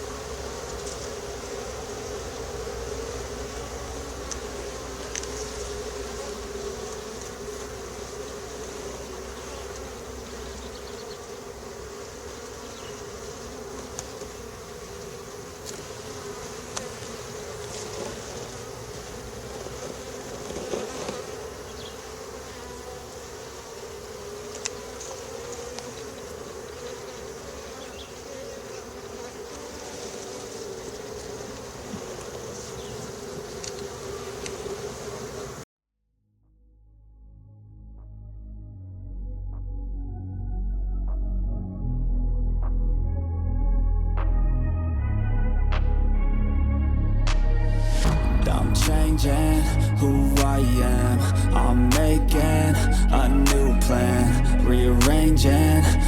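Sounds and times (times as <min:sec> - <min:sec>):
bees buzzing: 0:00.0 - 0:35.6, 0:39.6 - 0:56.0
faint clicks: 0:33.6 - 0:34.6
low rumble: 0:36.9 - 0:56.0.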